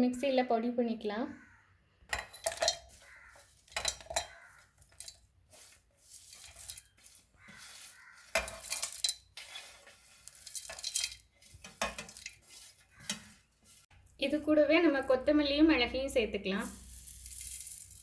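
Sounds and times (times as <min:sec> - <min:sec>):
plate and spoon clinking: 0:02.1 - 0:03.0, 0:03.7 - 0:05.2.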